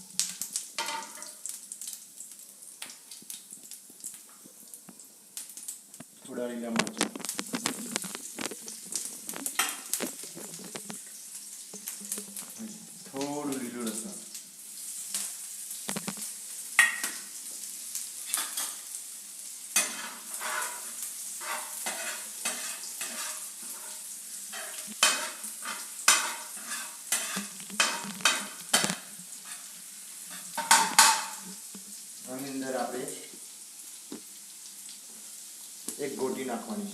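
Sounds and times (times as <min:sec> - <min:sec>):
vegetables sizzling in hot oil: 0:00.0 - 0:36.9
spoon scraping and knocking pan: 0:00.8 - 0:01.3, 0:06.8 - 0:11.0, 0:15.9 - 0:17.2, 0:18.3 - 0:18.8, 0:19.8 - 0:31.6.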